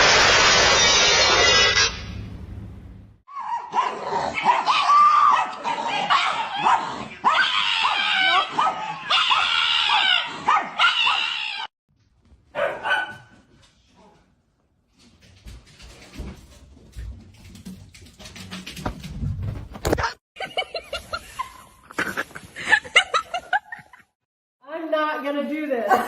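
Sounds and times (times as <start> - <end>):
loud noisy hiss: 0.0 - 2.1.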